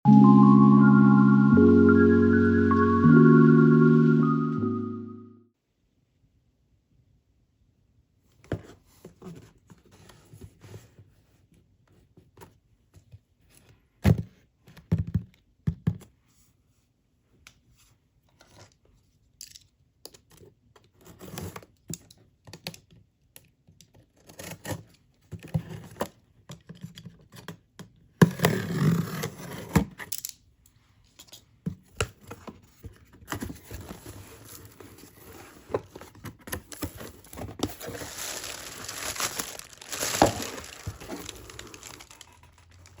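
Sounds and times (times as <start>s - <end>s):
wrapping rustling and tearing: 36.7s - 43.0s.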